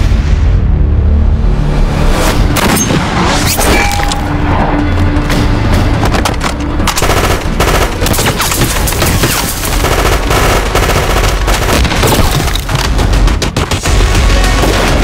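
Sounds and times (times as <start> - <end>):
machine-gun fire bursts: 7.0 - 15.0.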